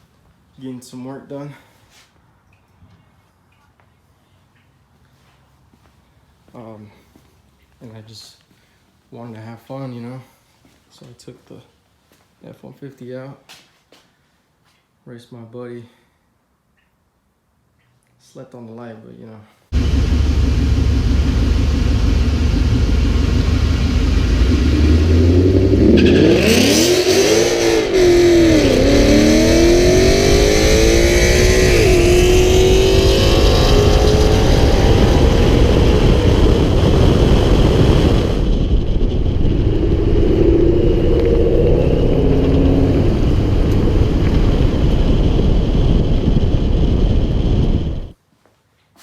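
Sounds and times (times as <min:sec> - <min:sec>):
truck engine accelerating hard: 0:19.8 - 0:48.1.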